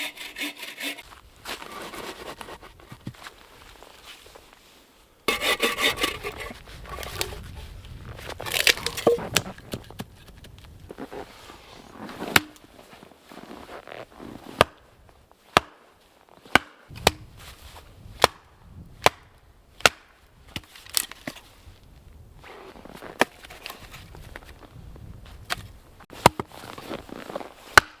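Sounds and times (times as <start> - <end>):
wood being chopped: 12.3 - 12.7, 15.5 - 15.8, 16.5 - 17.2, 18.2 - 18.4, 19.0 - 21.4, 25.5 - 26.5, 27.7 - 28.0.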